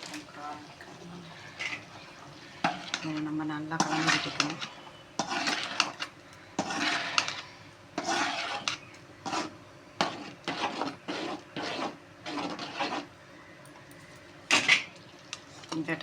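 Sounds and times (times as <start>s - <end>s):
spoon scraping a pan: 0.0s - 13.1s, 14.5s - 15.9s.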